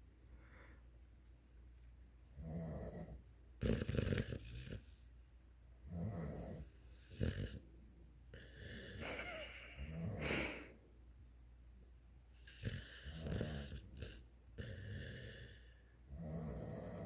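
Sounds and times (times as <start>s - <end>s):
dog snoring: 2.3s - 5.0s, 5.8s - 7.7s, 8.3s - 10.7s, 12.4s - 17.0s.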